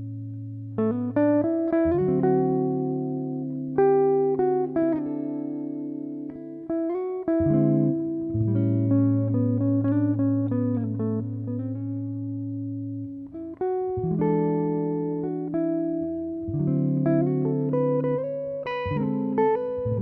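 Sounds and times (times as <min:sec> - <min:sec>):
plucked-string melody: 0:00.0 - 0:20.0.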